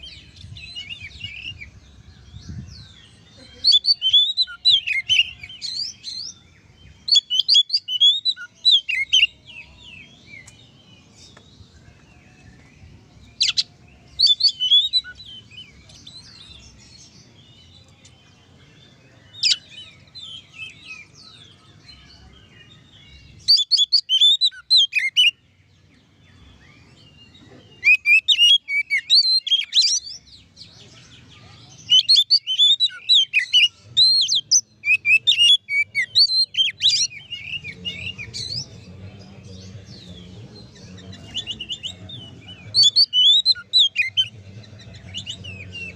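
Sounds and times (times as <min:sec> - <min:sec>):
bird singing whistled phrases: 0:27.8 - 0:30.2.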